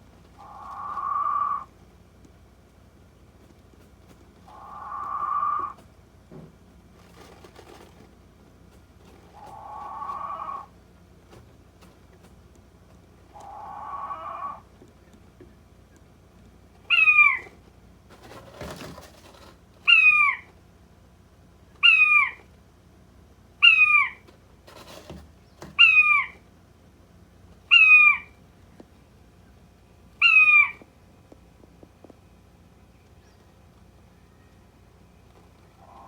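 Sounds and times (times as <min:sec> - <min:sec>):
rustling: 0:00.0 - 0:13.2, 0:16.4 - 0:20.7, 0:24.1 - 0:26.4, 0:33.0 - 0:36.0
quail mewing call: 0:00.3 - 0:01.7, 0:04.4 - 0:05.8, 0:09.3 - 0:10.7, 0:13.3 - 0:14.7, 0:16.8 - 0:17.6, 0:18.2 - 0:20.5, 0:21.8 - 0:22.5, 0:23.6 - 0:26.4, 0:27.7 - 0:28.4, 0:30.2 - 0:30.8, 0:35.7 - 0:36.0.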